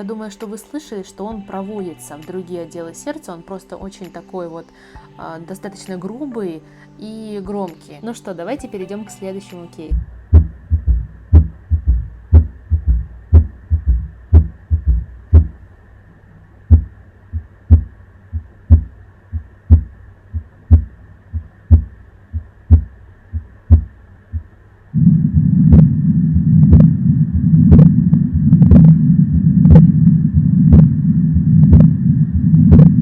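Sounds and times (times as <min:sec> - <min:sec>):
heartbeat sounds: 0:09.9 - 0:15.6, 0:16.7 - 0:33.0
loud low rumble: 0:09.9 - 0:15.7, 0:16.6 - 0:33.0.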